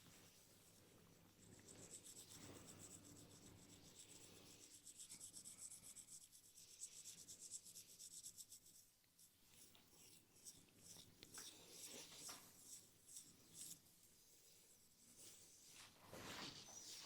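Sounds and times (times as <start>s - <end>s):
hands rubbing over hair and skin: 14.3s - 17.0s.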